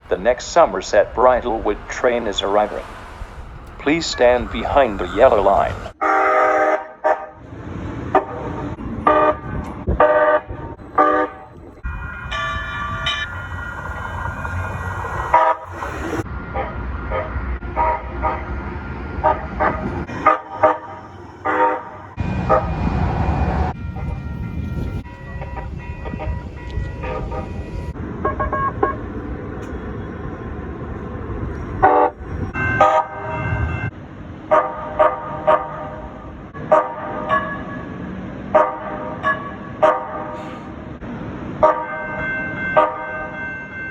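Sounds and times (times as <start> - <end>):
train rumble: 0.0 - 43.9
train horn blasts: 6.0 - 7.5, 8.1 - 13.3, 16.5 - 18.5, 19.2 - 23.0, 23.8 - 29.0, 31.8 - 33.8, 36.6 - 37.4, 38.5 - 39.0
high steady ringing tone: 11.8 - 16.2, 23.7 - 28.8.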